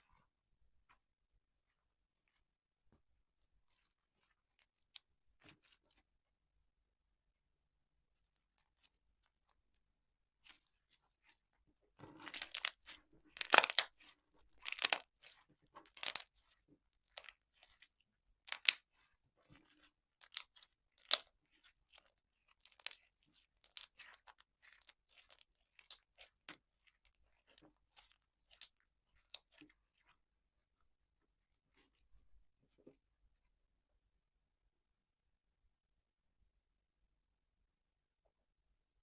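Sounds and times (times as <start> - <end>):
slime crackling and popping: 13.4 - 13.9, 14.6 - 15.1, 15.9 - 16.3.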